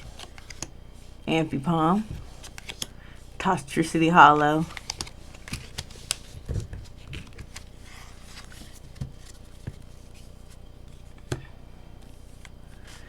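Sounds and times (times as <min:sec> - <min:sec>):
cards and packaging clicking: 0:00.0 - 0:00.7, 0:02.4 - 0:02.9, 0:04.6 - 0:09.9.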